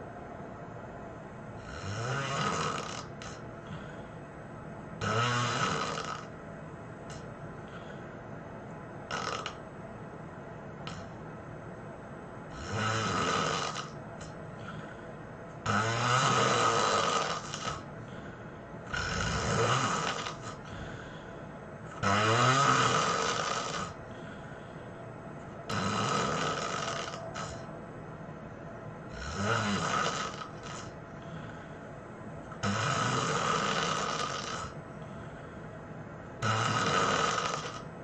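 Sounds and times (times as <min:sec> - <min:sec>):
person snoring heavily: 0:01.6 - 0:04.0, 0:05.0 - 0:06.3, 0:09.1 - 0:09.6, 0:12.5 - 0:14.0, 0:15.6 - 0:18.3, 0:18.9 - 0:21.3, 0:21.9 - 0:24.6, 0:25.6 - 0:27.7, 0:29.1 - 0:31.7, 0:32.6 - 0:35.4, 0:36.4 - 0:37.9.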